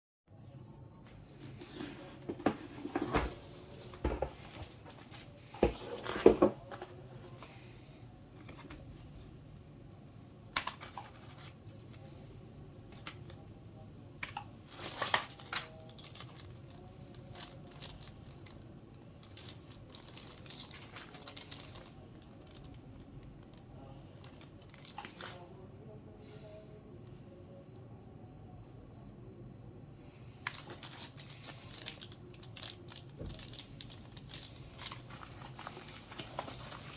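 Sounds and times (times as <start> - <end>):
packaging tearing and crinkling: 19.2 - 22.7, 30.5 - 36.9.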